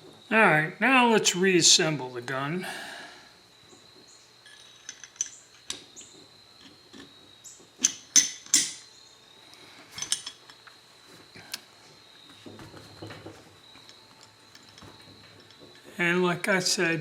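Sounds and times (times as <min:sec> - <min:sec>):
pistol parts clicking and scraping: 0:04.4 - 0:07.2, 0:07.8 - 0:08.9, 0:09.9 - 0:10.7.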